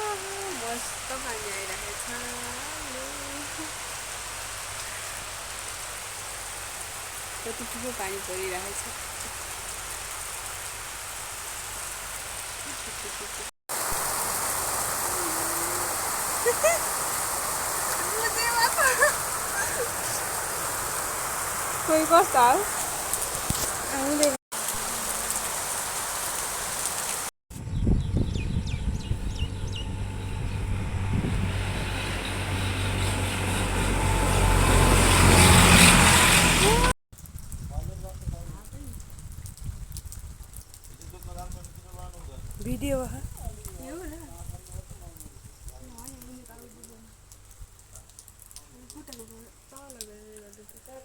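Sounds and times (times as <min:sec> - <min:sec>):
heavy rain falling: 0:00.0 - 0:27.3, 0:33.6 - 0:51.0
falling whistled bird chirps: 0:27.7 - 0:29.9
vehicle engine humming: 0:28.1 - 0:37.0.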